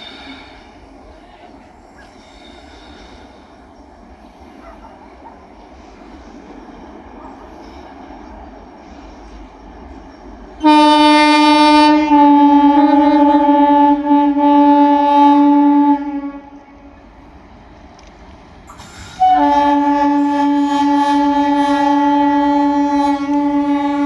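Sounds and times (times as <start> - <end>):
locomotive air horn: 10.6 - 16.8, 19.0 - 24.0.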